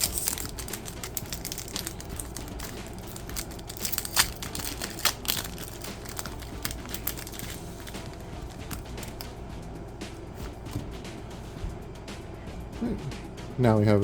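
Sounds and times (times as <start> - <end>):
card pack wrapper crinkling and tearing: 0.0 - 9.3.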